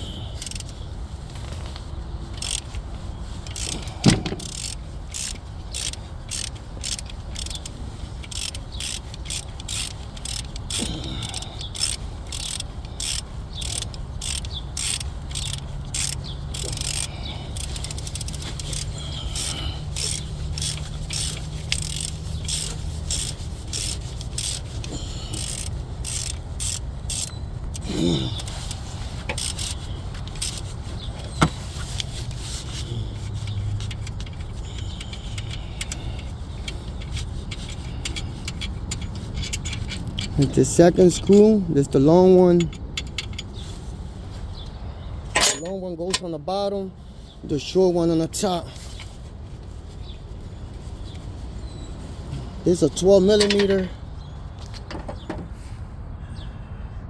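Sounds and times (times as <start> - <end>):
socket ratchet clicking: 0.0 - 0.8, 2.4 - 41.5, 42.6 - 43.6.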